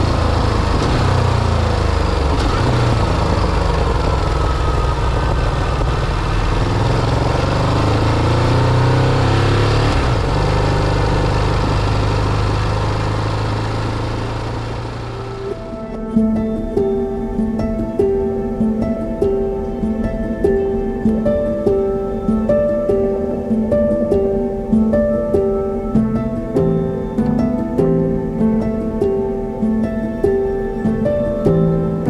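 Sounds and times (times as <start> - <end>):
motorcycle engine running: 0.0 - 15.8
road and wind noise: 0.0 - 31.6.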